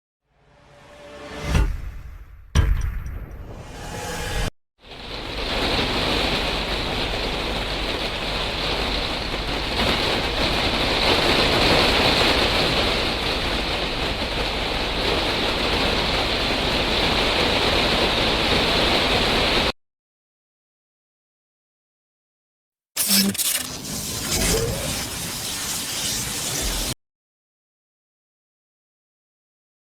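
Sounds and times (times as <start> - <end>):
heavy rain: 4.9 - 19.7, 23.7 - 27.0.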